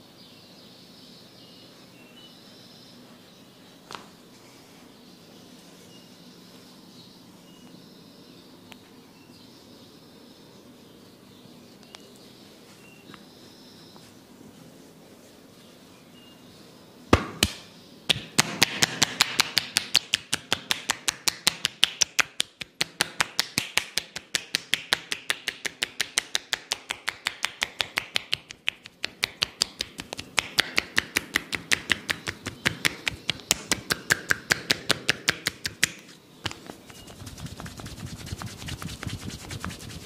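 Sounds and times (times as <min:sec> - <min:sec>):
hands slapping body in massage: 0:17.2 - 0:40.0.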